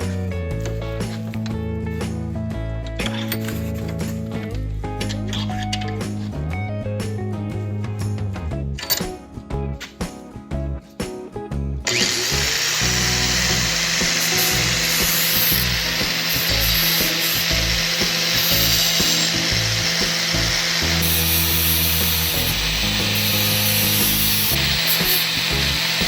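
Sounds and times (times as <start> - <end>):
background music: 0.0 - 26.0
angle grinder running: 11.9 - 26.0.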